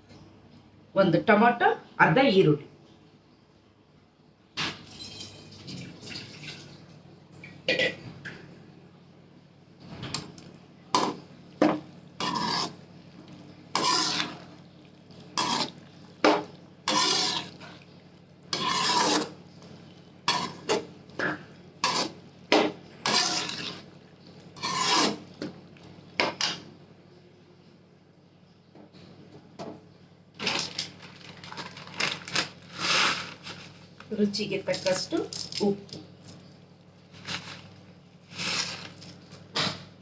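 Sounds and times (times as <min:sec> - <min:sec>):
spoon scraping metal pot: 0:11.0 - 0:12.8, 0:13.7 - 0:14.6, 0:15.3 - 0:17.8, 0:18.5 - 0:19.4, 0:20.3 - 0:23.9, 0:24.6 - 0:25.3.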